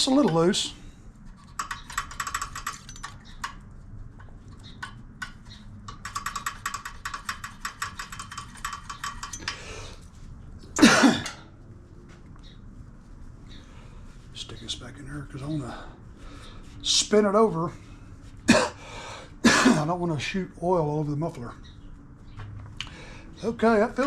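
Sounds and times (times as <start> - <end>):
ratchet wrench clicking: 1.4 - 3.6, 4.6 - 9.6
person coughing: 10.8 - 11.5, 18.5 - 18.8, 19.4 - 19.9.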